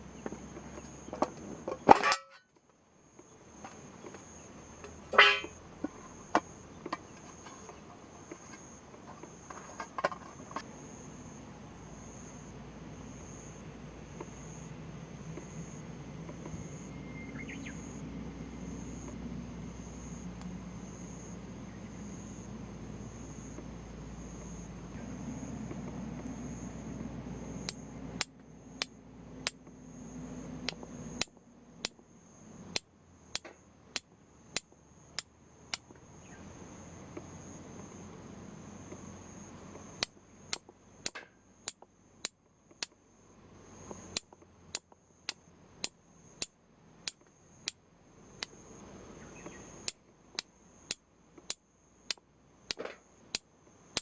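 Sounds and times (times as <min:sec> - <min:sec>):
insect chirping: 0:00.0 - 0:54.0.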